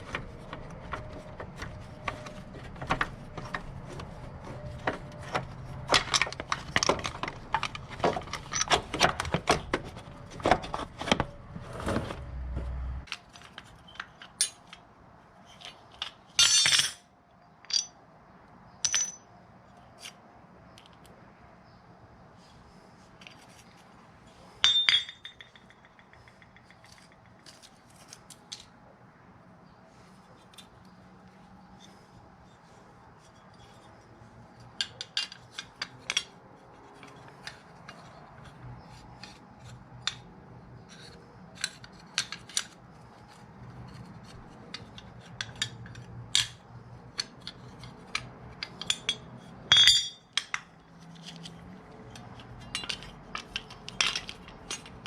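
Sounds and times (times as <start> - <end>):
metal tools clinking: 0.0 - 10.0, 15.5 - 17.0, 17.6 - 18.0, 18.8 - 19.3, 24.5 - 28.6, 44.7 - 55.0.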